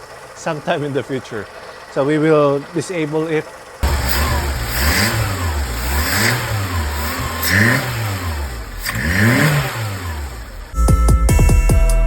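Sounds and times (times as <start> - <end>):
car engine revving: 3.5 - 10.8.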